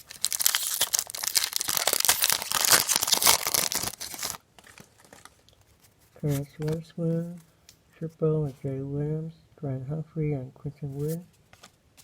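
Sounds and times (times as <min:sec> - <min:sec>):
wrapper tearing and crinkling: 0:00.0 - 0:05.6.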